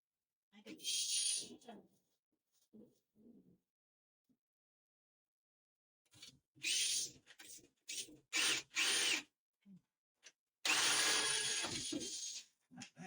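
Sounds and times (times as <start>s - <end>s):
electric drill spinning: 8.4s - 9.2s, 10.7s - 11.9s.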